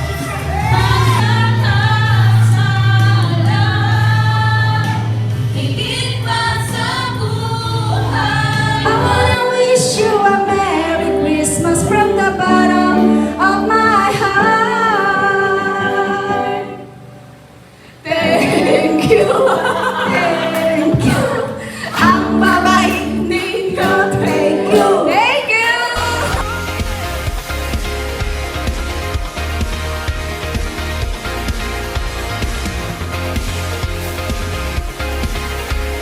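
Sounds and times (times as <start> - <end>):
voices singing: 0.0 - 17.0, 18.0 - 27.3
held low accompaniment note: 7.8 - 9.5.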